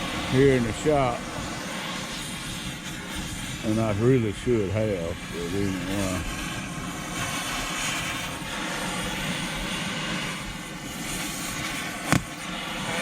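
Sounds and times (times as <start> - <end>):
cutting torch hissing: 0.0 - 13.0.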